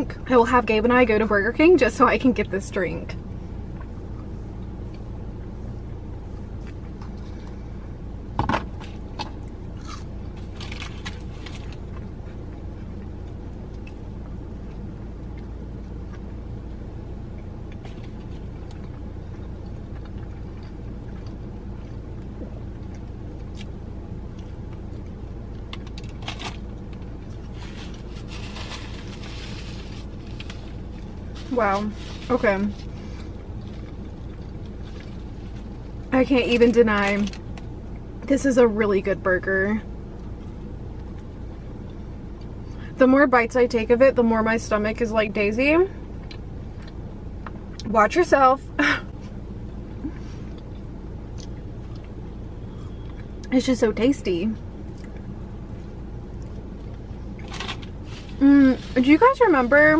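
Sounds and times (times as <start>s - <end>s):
low engine hum: 0.0s - 59.9s
food and drink rustles and clicks: 24.4s - 37.8s.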